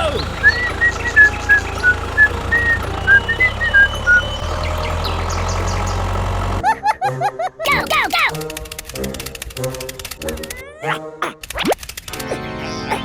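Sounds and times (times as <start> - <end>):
whistled tune: 0.0 - 6.5.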